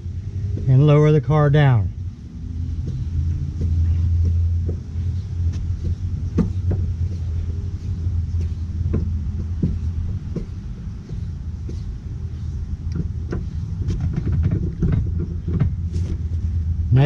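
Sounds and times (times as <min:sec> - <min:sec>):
low rumble: 0:00.0 - 0:17.0
car jack creaking and clicking: 0:12.7 - 0:16.4.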